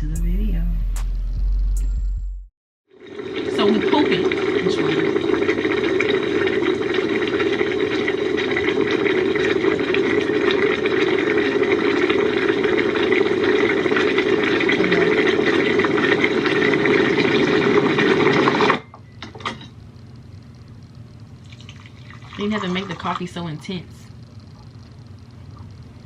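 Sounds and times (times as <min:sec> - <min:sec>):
coffee machine running: 0:02.9 - 0:19.8, 0:21.4 - 0:23.6.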